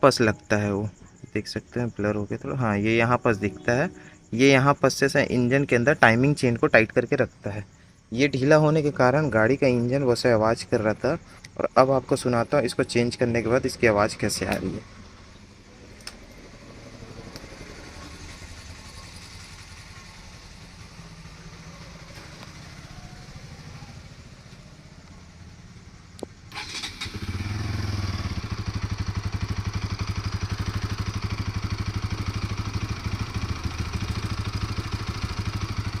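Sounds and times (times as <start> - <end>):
motorcycle engine running: 14.2 - 36.0.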